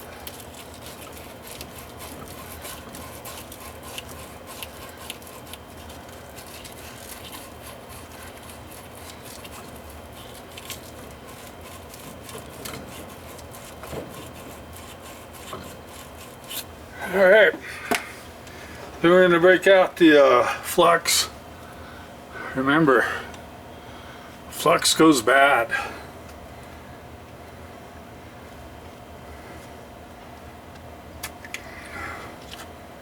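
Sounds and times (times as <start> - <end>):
sandpaper scratching metal pipe: 0.0 - 16.7.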